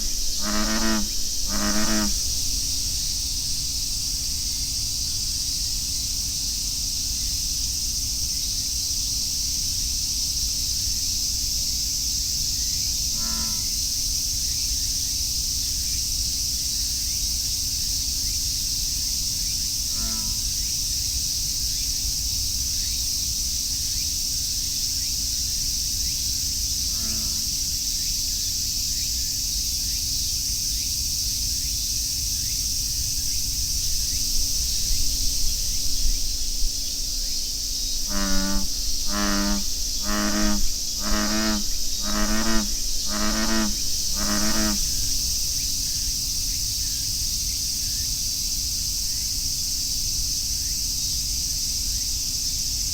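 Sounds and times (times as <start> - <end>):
bullfrog croaking: 0.0 - 3.0, 13.1 - 13.8, 19.9 - 20.5, 26.8 - 27.6, 34.1 - 45.7
cicadas droning: 0.0 - 52.9.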